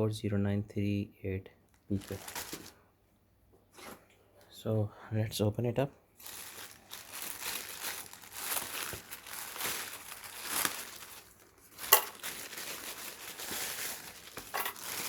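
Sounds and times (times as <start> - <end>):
packaging crinkling and tearing: 1.7 - 2.8, 6.2 - 15.0
packaging snapping: 6.2 - 15.0.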